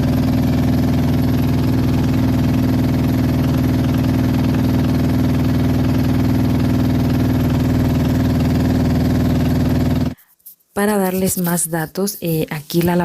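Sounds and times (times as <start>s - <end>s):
washing machine humming and vibrating: 0.0s - 10.2s.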